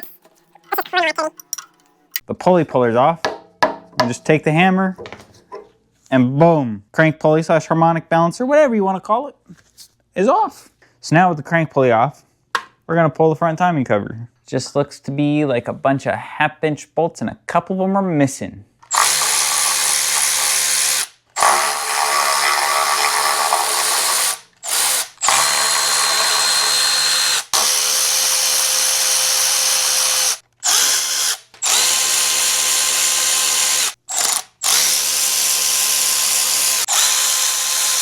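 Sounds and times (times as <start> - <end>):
power drill whirring: 18.9 - 38.0.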